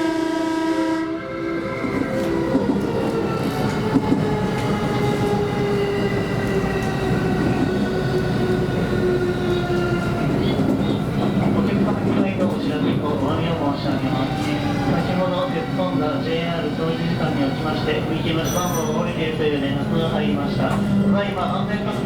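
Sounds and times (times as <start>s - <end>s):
train horn-like tone: 0.0s - 2.3s
train running noise: 1.3s - 22.0s.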